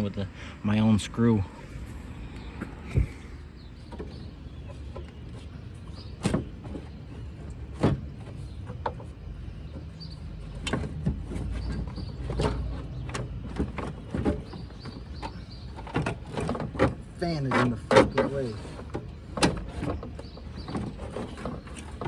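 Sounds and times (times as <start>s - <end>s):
steady low rumble: 0.0s - 4.6s
car parts knocking and clunking: 1.8s - 22.0s.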